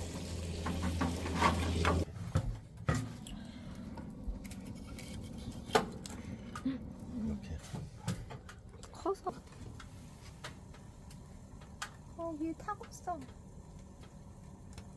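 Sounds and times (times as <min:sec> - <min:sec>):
meat sizzling in a pan: 0:00.0 - 0:02.1.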